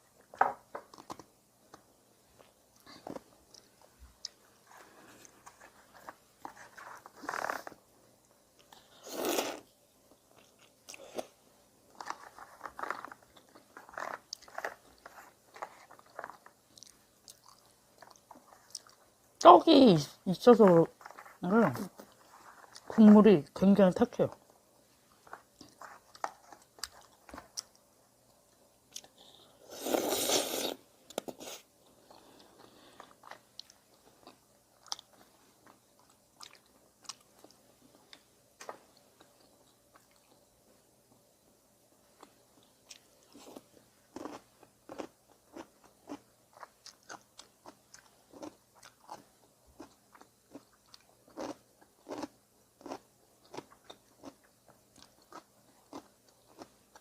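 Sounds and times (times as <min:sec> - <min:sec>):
loud noodle slurp: 0:09.0 - 0:09.6, 0:29.6 - 0:30.8.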